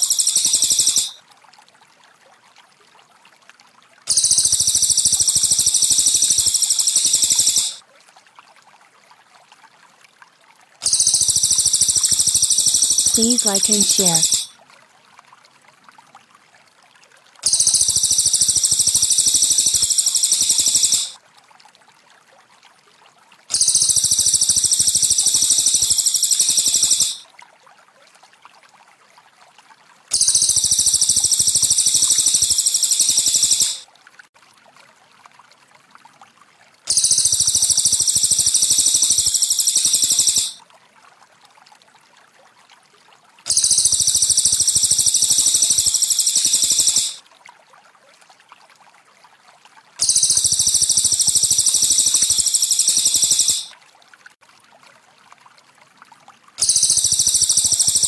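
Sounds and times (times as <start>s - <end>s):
songbird trilling: 0.0s - 1.2s, 4.1s - 7.8s, 10.8s - 14.5s, 17.4s - 21.2s, 23.5s - 27.2s, 30.1s - 33.8s, 36.9s - 40.6s, 43.5s - 47.2s, 50.0s - 53.7s, 56.6s - 58.0s
water trickling: 15.2s - 22.4s, 29.6s - 35.6s.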